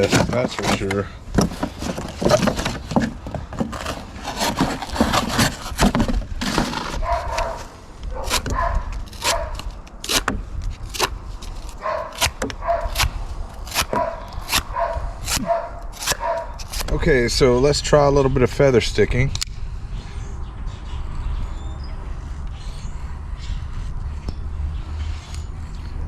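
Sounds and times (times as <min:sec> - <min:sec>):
knife cutting cardboard: 0:00.0 - 0:17.0
dog barking: 0:07.0 - 0:09.6, 0:11.8 - 0:13.0, 0:13.9 - 0:16.6.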